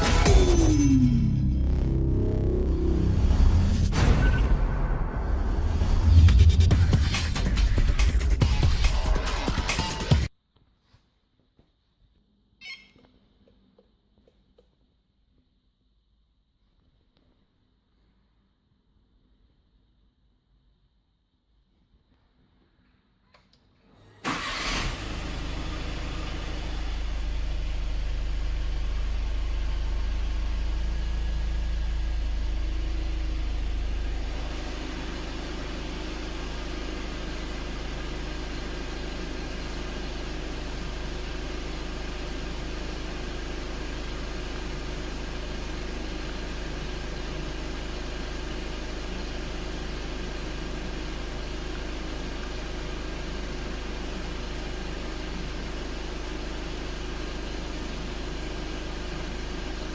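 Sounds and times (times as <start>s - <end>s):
car engine running: 0.0s - 10.3s, 24.3s - 59.9s
car engine cranking: 24.3s - 26.4s.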